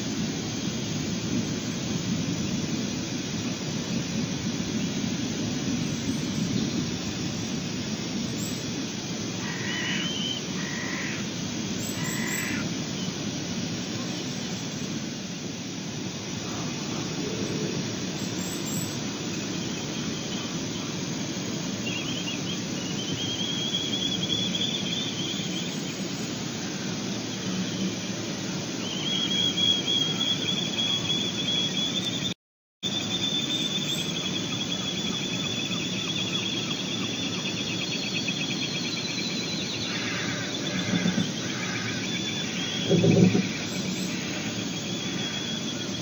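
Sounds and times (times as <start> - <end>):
steady rushing background noise: 0.0 - 32.4, 33.0 - 46.0
ospreys chirping: 32.9 - 46.0.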